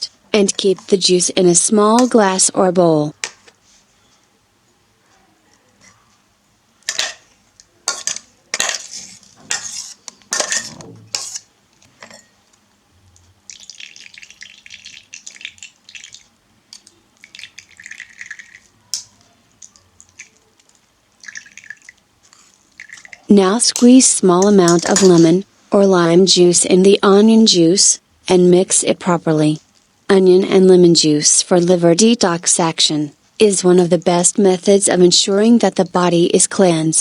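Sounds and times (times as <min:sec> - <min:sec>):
utensils knocking on dishes: 0:07.9 - 0:11.3
liquid pouring: 0:13.4 - 0:23.3.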